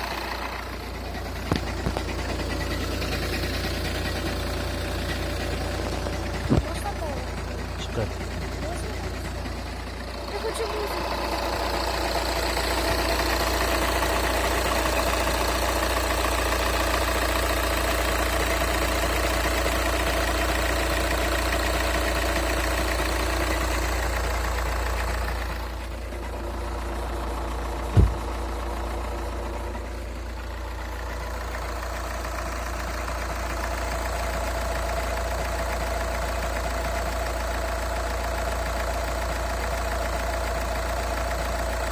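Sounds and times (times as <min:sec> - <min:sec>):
diesel engine idling with knocking: 0:00.0 - 0:41.9
sharp engine knock: 0:01.2 - 0:10.3, 0:27.8 - 0:28.5.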